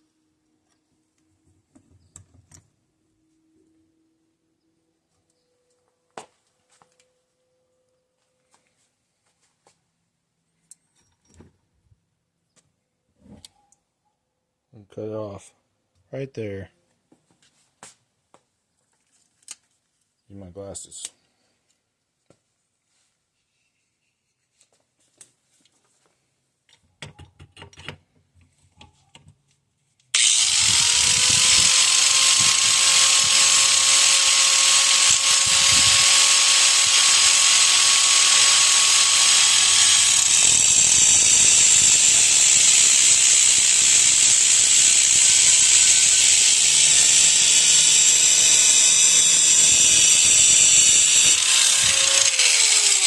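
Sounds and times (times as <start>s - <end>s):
rotary tool whining: 30.2s - 53.0s.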